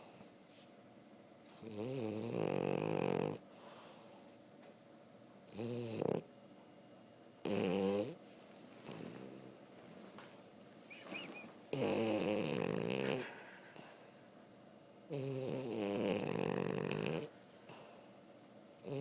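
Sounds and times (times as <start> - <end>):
dog snoring: 1.5 - 3.4, 5.5 - 6.3, 7.4 - 8.2, 8.8 - 9.6, 10.9 - 13.9, 15.1 - 18.0, 18.8 - 19.0.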